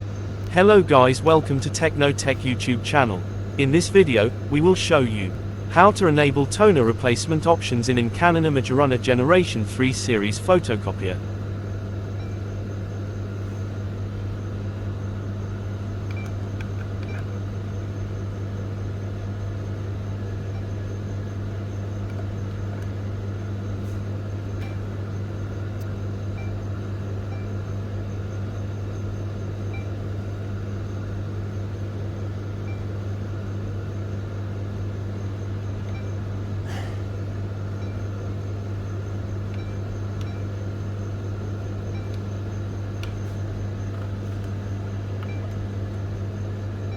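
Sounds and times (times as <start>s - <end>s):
photocopier humming: 0.0s - 46.9s
click: 39.5s - 40.4s, 43.0s - 43.2s.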